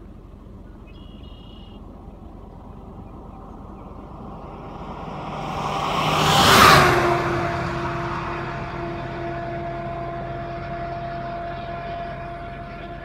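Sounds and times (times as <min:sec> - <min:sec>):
vehicle passing close by: 0:01.8 - 0:13.0.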